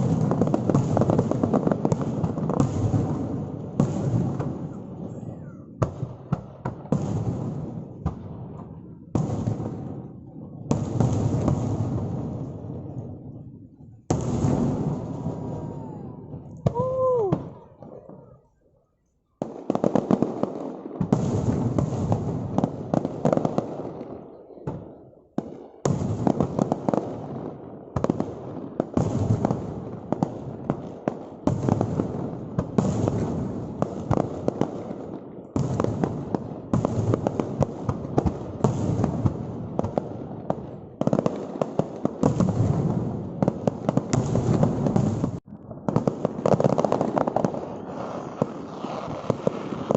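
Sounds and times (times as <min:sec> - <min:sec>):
firework bangs and crackling: 0:00.0 - 0:18.6, 0:19.2 - 0:49.9
falling firework whistle: 0:04.7 - 0:06.0, 0:15.0 - 0:18.6.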